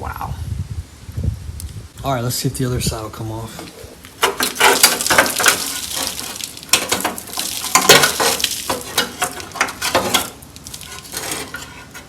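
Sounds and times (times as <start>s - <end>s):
metal scraping and clattering: 3.6s - 12.0s.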